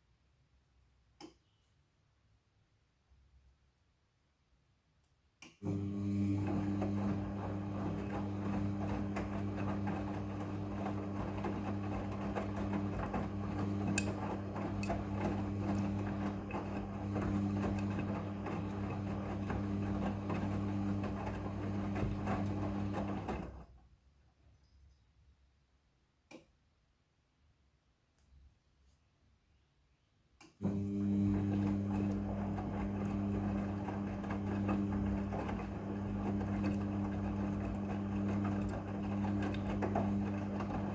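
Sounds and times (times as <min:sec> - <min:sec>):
washing machine humming: 0:05.6 - 0:23.8, 0:30.6 - 0:40.9.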